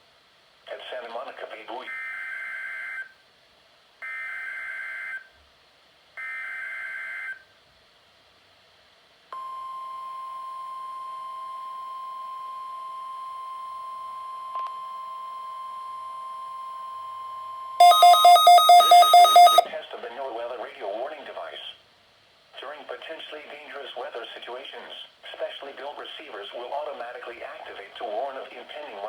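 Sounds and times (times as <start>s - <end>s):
rapidly pulsing beep: 17.8s - 19.7s
steady single-pitched alert tone: 17.8s - 19.7s.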